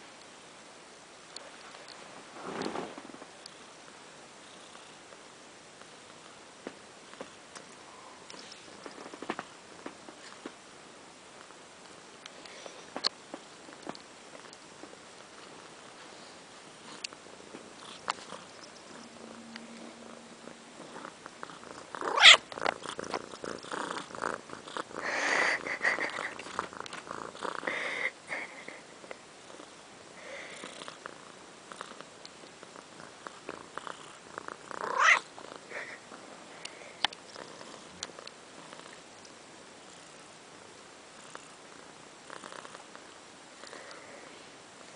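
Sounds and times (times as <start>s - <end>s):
kitten purring: 4.4s - 5.2s, 15.2s - 39.1s, 41.2s - 44.9s
small clicks and rustles: 5.8s - 10.6s, 11.4s - 16.1s.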